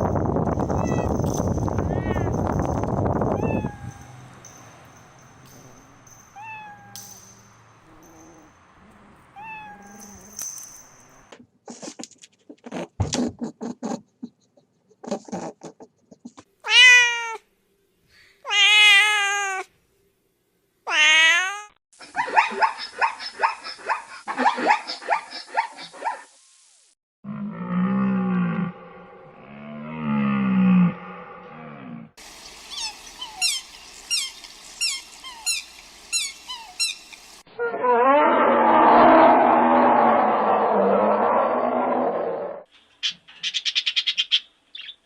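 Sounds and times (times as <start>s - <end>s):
cat meowing: 0.8s - 1.1s, 1.9s - 2.3s, 3.4s - 4.1s, 6.4s - 7.0s, 9.4s - 10.1s, 16.6s - 17.4s, 18.5s - 19.7s, 20.9s - 21.8s
rapid high chirping: 32.4s - 37.3s.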